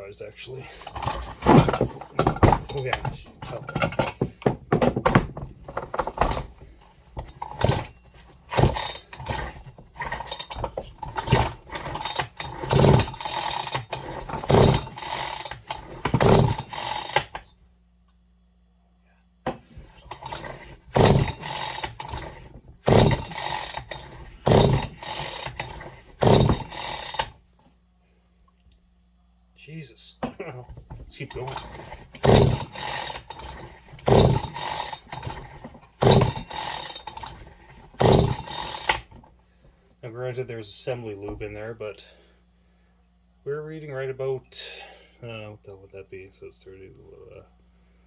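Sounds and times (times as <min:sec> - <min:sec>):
chainsaw recoil starter pulls: 0:00.8 - 0:04.2, 0:04.8 - 0:06.6, 0:07.2 - 0:17.5, 0:19.9 - 0:27.4, 0:31.0 - 0:39.3.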